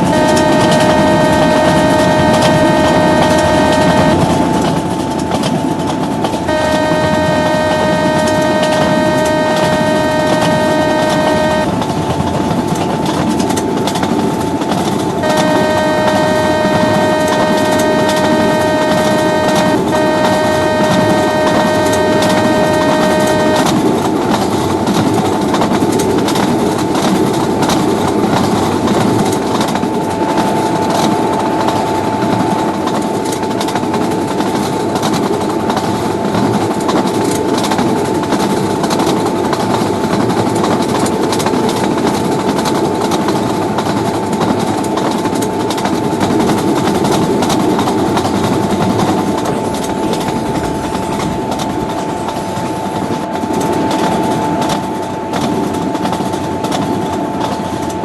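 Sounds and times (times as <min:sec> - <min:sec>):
faint steady tone: 0:00.0 - 0:05.3, 0:06.3 - 0:11.7, 0:15.2 - 0:23.9
two-note train horn blasts: 0:00.0 - 0:12.0, 0:14.6 - 0:25.4, 0:26.2 - 0:34.2, 0:46.2 - 0:55.5
train running noise: 0:00.0 - 0:58.0.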